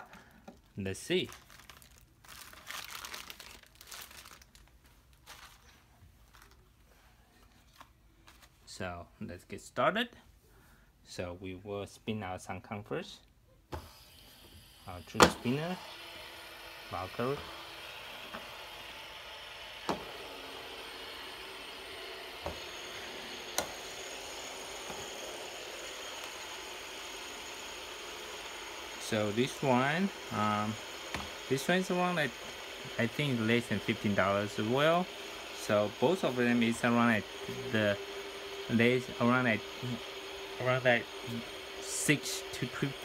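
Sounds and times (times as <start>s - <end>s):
rustling and handling: 0.0s - 8.7s.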